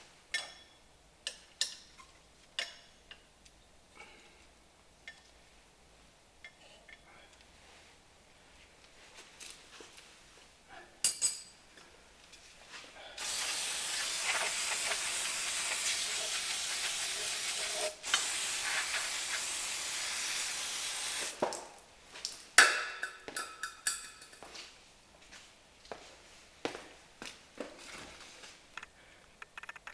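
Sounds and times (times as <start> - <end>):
metal clinks: 11.0 - 11.6, 22.7 - 24.5
aerosol spray hissing: 13.2 - 21.4.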